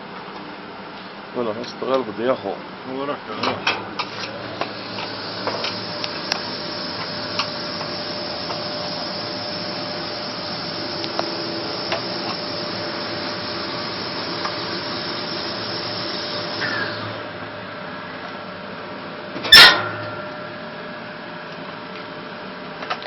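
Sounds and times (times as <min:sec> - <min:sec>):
motor whirring and hissing: 0:04.2 - 0:17.3.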